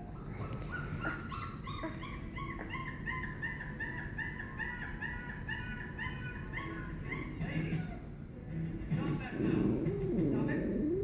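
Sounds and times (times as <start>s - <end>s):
dog howling: 9.4s - 11.0s.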